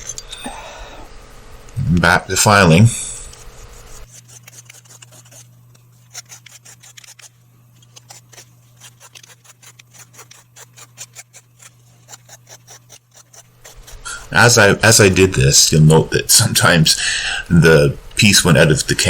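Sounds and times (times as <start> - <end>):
hand file rasping: 3.2 - 14.6.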